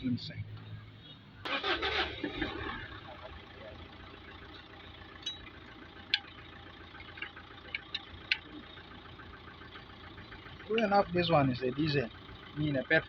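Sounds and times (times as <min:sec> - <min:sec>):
low engine-like hum: 0:00.0 - 0:13.0
sharp metallic clicks and clinks: 0:05.2 - 0:06.4, 0:07.0 - 0:08.6.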